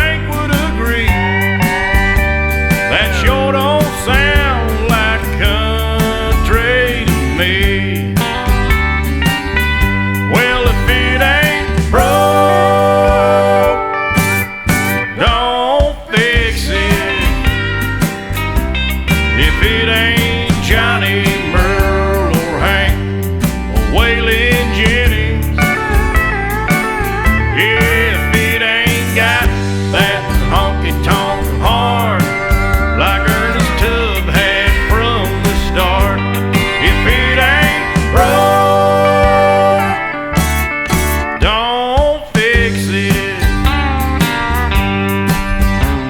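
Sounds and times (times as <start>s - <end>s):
country music: 0.0s - 46.0s.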